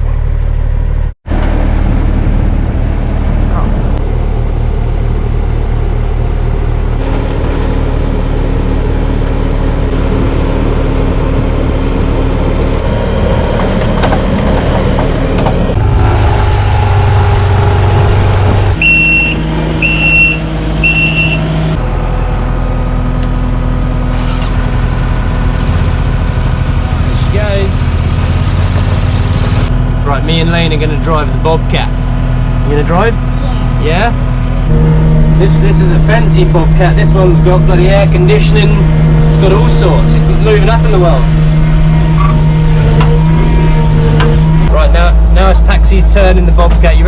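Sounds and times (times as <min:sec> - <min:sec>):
vehicle engine running: 0:00.0 - 0:47.0
reversing alarm beeps: 0:18.8 - 0:21.5.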